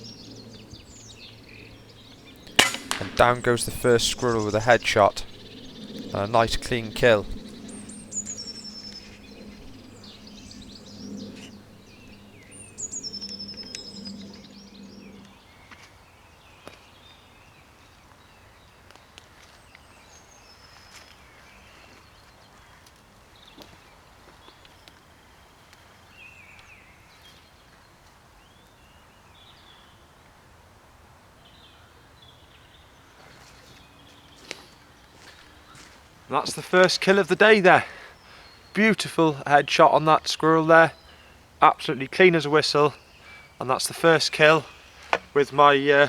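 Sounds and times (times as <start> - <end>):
birds chirping: 0.0 - 17.7, 31.4 - 46.0.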